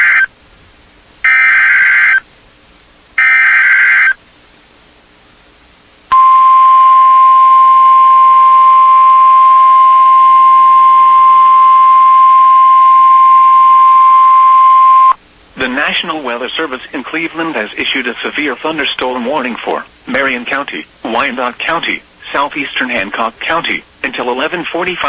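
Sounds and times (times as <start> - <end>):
steady warning alarm tone: 0.0 - 0.3, 1.2 - 2.2, 3.2 - 4.2, 6.1 - 15.2.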